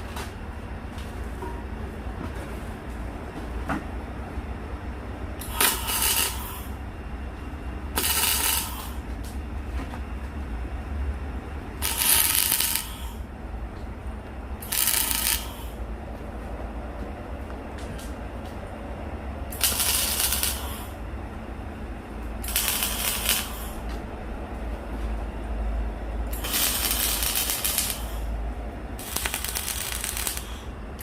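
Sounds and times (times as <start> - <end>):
grinder on steel: 5.4 - 6.5, 8.0 - 8.9, 11.8 - 13.1, 14.6 - 15.6, 19.5 - 20.8, 22.4 - 23.7, 26.4 - 28.2, 29.0 - 30.5.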